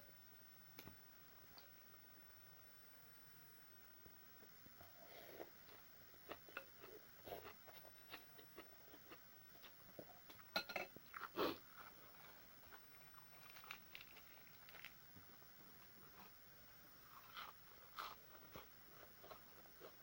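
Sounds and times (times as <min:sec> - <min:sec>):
person chewing and crunching food: 0:04.8 - 0:20.0.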